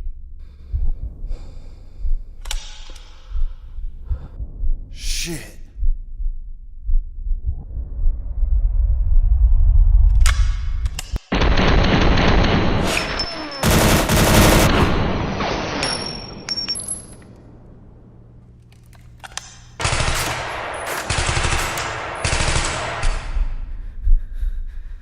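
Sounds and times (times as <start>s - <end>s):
rapid automatic gunfire: 11.3s - 15.2s, 19.8s - 23.4s.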